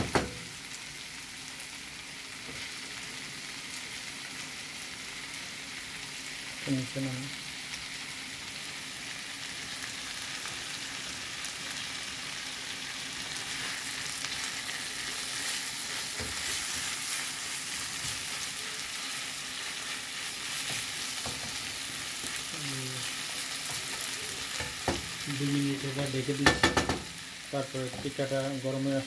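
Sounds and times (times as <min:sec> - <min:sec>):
spoon knocking on pan: 0:00.0 - 0:00.6, 0:23.7 - 0:25.2, 0:26.4 - 0:27.2
food sizzling in a pan: 0:00.0 - 0:29.0.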